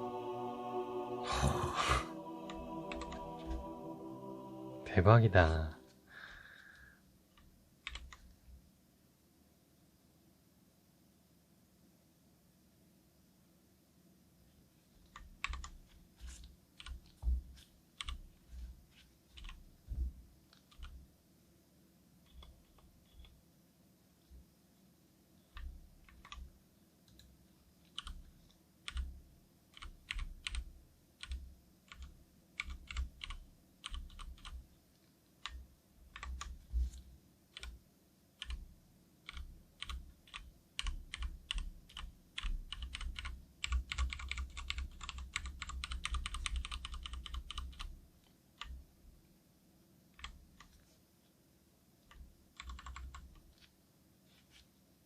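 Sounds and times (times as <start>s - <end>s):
mechanical keyboard typing: 7.4s - 8.3s, 15.0s - 15.8s, 25.5s - 26.5s, 27.9s - 28.2s, 28.8s - 29.1s, 29.7s - 34.6s, 35.4s - 36.6s, 38.4s - 38.6s, 39.2s - 47.9s, 52.1s - 53.6s.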